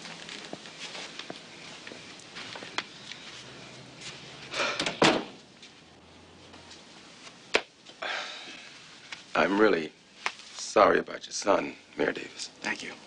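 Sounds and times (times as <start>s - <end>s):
door closing with a thud: 4.7s - 5.4s.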